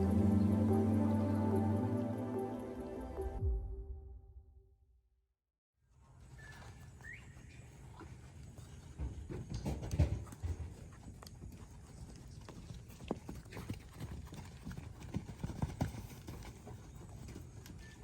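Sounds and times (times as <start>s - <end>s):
horse hooves clopping: 6.2s - 18.0s.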